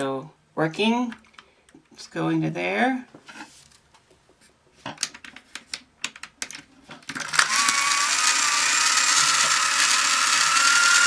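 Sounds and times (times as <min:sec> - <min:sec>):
toy robot motor whirring: 0:07.2 - 0:11.0.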